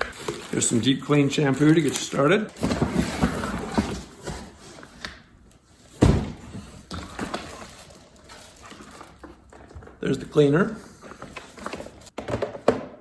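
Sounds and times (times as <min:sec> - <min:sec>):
packaging handling noise: 0:00.0 - 0:12.8.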